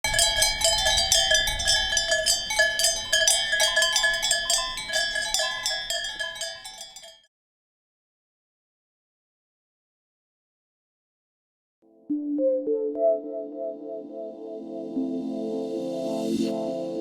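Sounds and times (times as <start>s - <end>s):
cowbells clanging: 0.0s - 7.3s.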